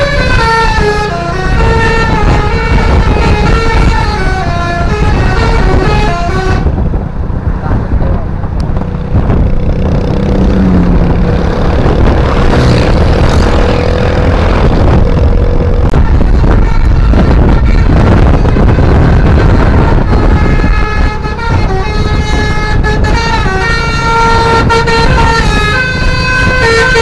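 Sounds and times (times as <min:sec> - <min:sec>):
musical bus horn tune: 0:00.0 - 0:06.9, 0:15.8 - 0:27.0
steady horn tone: 0:00.0 - 0:07.0, 0:10.4 - 0:27.0
engine and road noise: 0:00.0 - 0:27.0.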